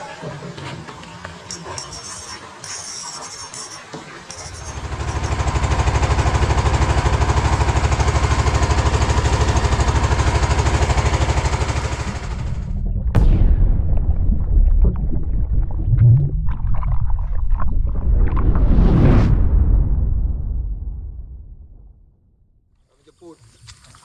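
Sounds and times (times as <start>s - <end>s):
small boat engine throbbing: 0.6s - 13.4s.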